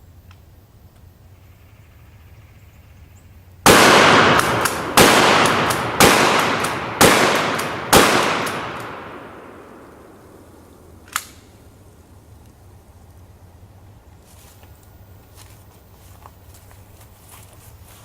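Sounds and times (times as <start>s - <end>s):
shotgun shots: 3.7s - 11.3s.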